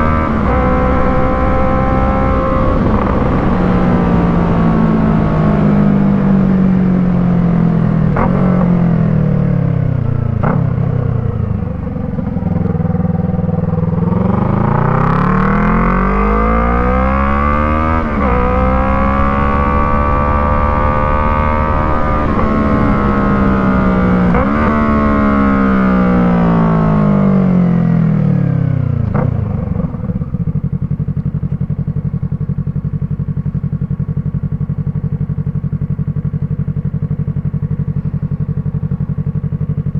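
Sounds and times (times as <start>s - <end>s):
motorcycle engine accelerating through gears: 0.0s - 39.9s
motorcycle engine idling: 8.7s - 14.8s, 28.6s - 39.9s.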